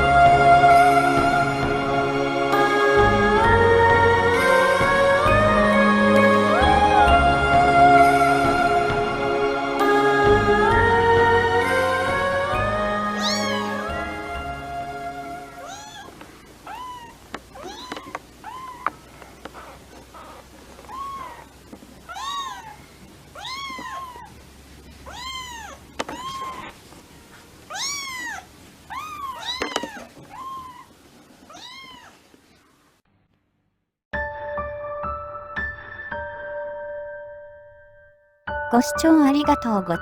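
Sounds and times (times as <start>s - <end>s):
kitten meowing: 13.2s - 13.8s, 15.6s - 16.1s, 16.7s - 18.9s, 20.9s - 21.5s, 22.1s - 22.8s, 23.4s - 24.3s, 25.1s - 26.7s, 27.7s - 30.9s, 31.5s - 32.2s.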